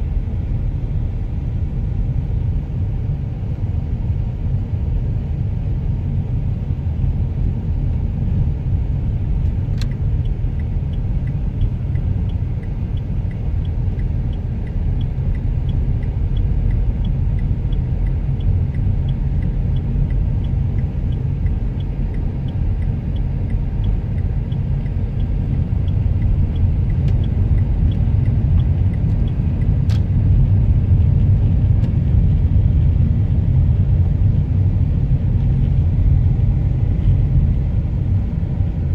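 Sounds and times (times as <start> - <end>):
car driving rumble: 0.0 - 38.9
light regular ticking: 9.4 - 33.4.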